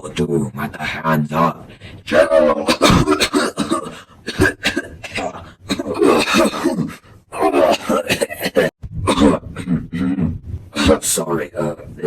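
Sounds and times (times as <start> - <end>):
person grunting and groaning: 2.4 - 11.0
person hacking cough: 2.7 - 6.9, 7.6 - 9.7.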